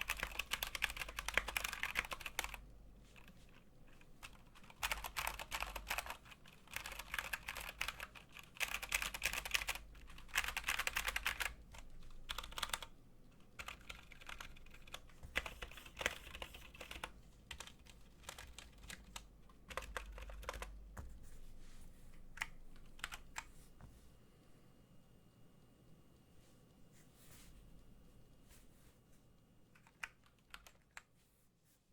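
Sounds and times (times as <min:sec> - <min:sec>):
mechanical keyboard typing: 0:00.0 - 0:02.6, 0:03.2 - 0:12.9, 0:13.5 - 0:20.8, 0:22.4 - 0:23.5, 0:29.8 - 0:31.1.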